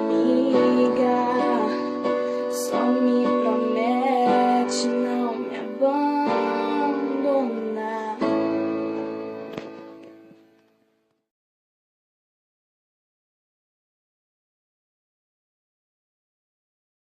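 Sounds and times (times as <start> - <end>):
keyboard chords: 0.0 - 10.7.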